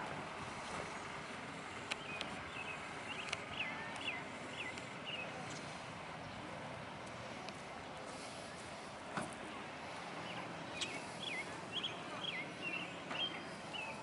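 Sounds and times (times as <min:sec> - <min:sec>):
steady outdoor noise: 0:00.0 - 0:14.0
bird chirping: 0:01.9 - 0:05.6, 0:10.2 - 0:14.0.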